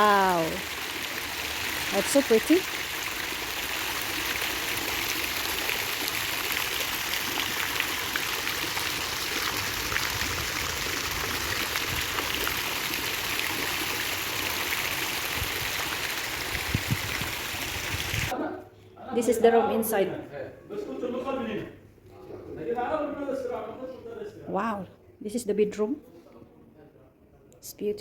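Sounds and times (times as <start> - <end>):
running water splashing: 0.0 - 18.3.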